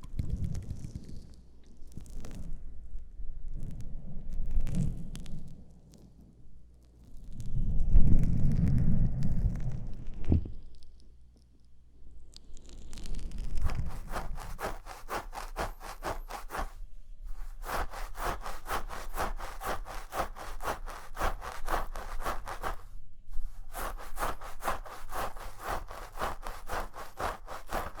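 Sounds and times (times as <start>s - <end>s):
rhythmic scratching strokes: 13.7s - 22.8s, 23.5s - 28.0s.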